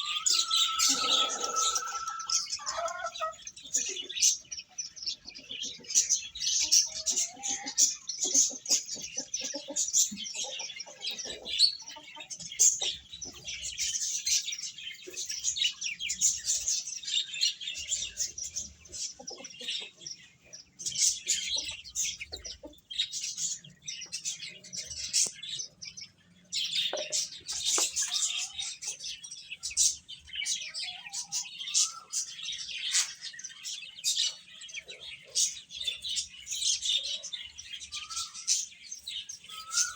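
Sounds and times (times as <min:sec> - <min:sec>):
lower rising calls: 0:00.0 - 0:03.1
chicks peeping: 0:00.0 - 0:39.9.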